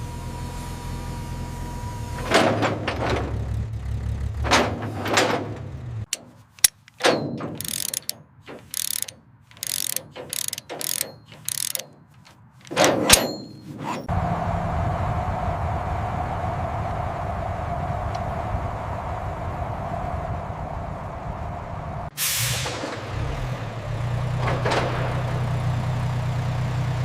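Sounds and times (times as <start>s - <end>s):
sharp mechanical clicks: 6.1s - 13.5s
low machine hum: 14.1s - 22.1s.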